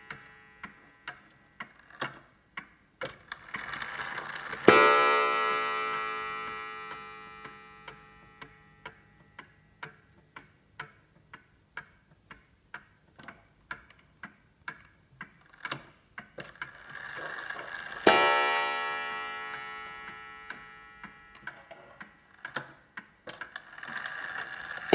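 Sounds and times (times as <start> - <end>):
mantel clock ticking: 0.0 - 24.9
clock chime strike: 4.7 - 8.8, 18.1 - 21.7.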